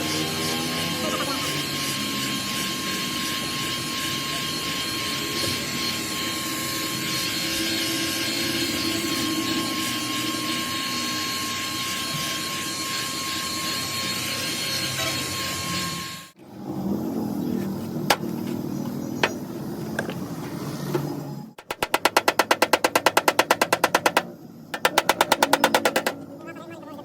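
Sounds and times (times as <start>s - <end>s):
machine noise with high whine: 0.0s - 27.0s.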